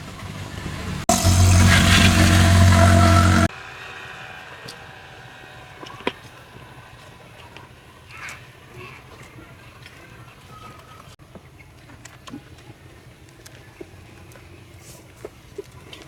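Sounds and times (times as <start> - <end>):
low motor hum: 0.0 - 3.5
pressure washer spray hissing: 1.1 - 3.5.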